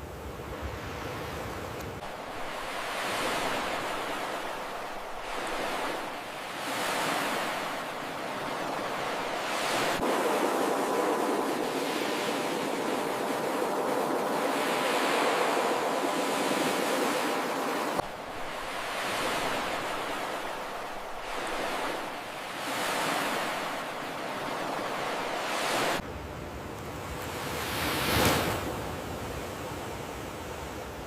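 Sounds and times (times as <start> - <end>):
ocean surf breaking: 0.6 - 26.0.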